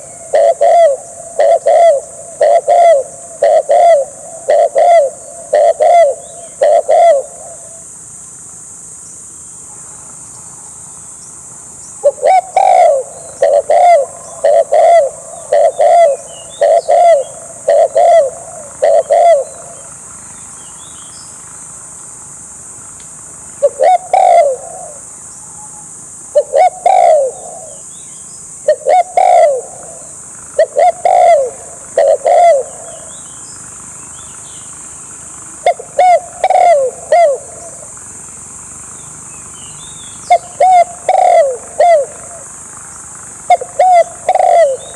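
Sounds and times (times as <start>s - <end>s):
dove cooing: 0.0s - 7.9s, 12.0s - 20.3s, 23.6s - 28.0s, 28.6s - 34.8s, 35.5s - 38.4s, 39.9s - 44.9s
high-pitched hiss: 0.0s - 44.9s.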